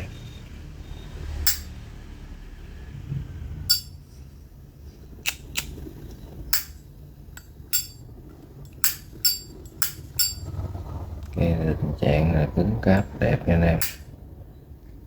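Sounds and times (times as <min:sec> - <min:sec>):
lighter lid clicking: 0:05.2 - 0:05.8.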